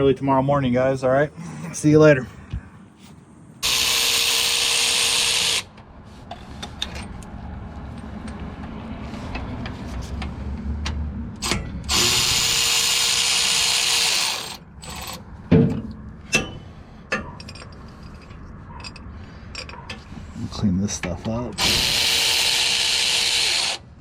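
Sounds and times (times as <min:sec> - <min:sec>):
power tool running: 0:03.6 - 0:05.7, 0:11.4 - 0:15.2, 0:21.6 - 0:23.9
sharp metal knocks: 0:15.5 - 0:17.7.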